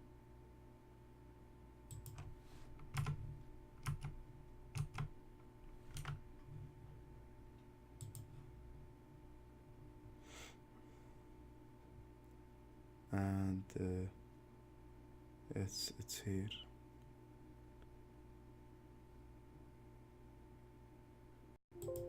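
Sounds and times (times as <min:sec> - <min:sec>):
faint electrical hum: 0:00.0 - 0:22.0
computer mouse clicks: 0:01.9 - 0:03.2, 0:05.9 - 0:06.2, 0:08.0 - 0:08.3.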